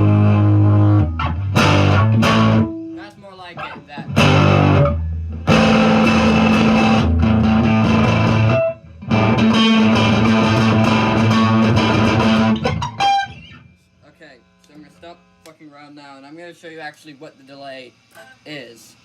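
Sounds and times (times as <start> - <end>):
overdriven electric guitar chords: 0.0 - 14.7.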